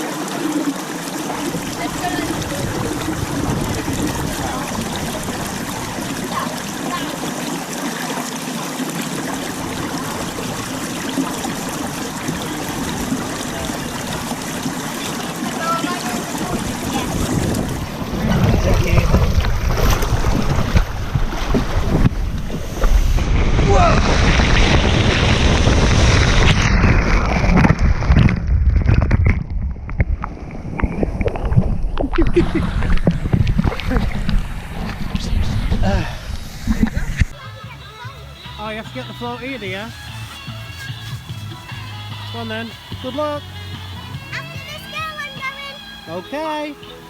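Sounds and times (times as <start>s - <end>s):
flowing splashing water: 0.0s - 47.0s
wind buffeting microphone: 1.4s - 6.8s, 9.4s - 37.4s.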